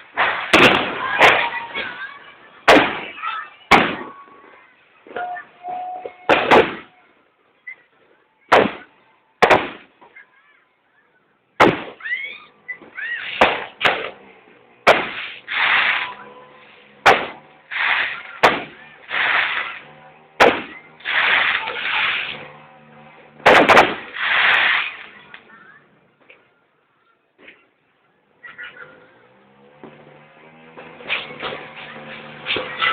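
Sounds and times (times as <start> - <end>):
fireworks bangs: 0.0 - 5.2, 6.0 - 7.0, 8.5 - 10.0, 11.6 - 12.2, 12.8 - 14.2, 14.8 - 16.3, 16.9 - 22.5, 23.4 - 25.3
hissing crackle: 14.9 - 16.2, 17.6 - 19.9, 21.0 - 22.5, 24.0 - 25.4
rising firework whistles: 15.2 - 16.3.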